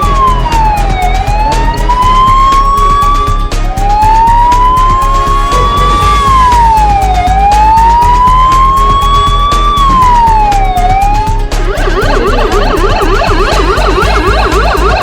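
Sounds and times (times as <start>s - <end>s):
low electronic beat: 0.0s - 15.0s
wailing siren: 0.0s - 15.0s
fast warbling electronic tones: 8.7s - 15.0s.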